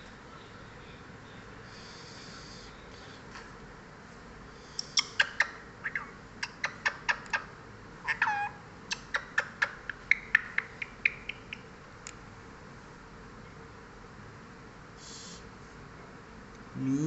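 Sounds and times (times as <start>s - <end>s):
parrot chirps and clicks: 4.8s - 7.5s, 8.1s - 12.2s
parrot squawk: 5.0s - 11.6s.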